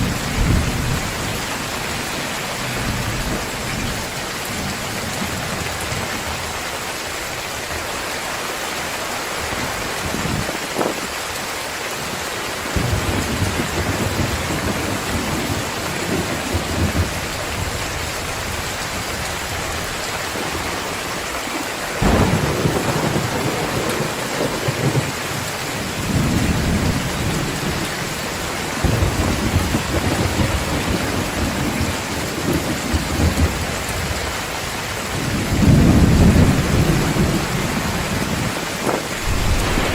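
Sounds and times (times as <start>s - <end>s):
thunder rumbling: 0.0s - 5.6s, 12.7s - 19.8s, 20.4s - 34.2s, 35.1s - 39.9s
heavy rain pouring: 0.0s - 39.9s
sharp thunder crack: 22.0s - 25.1s, 35.6s - 39.9s.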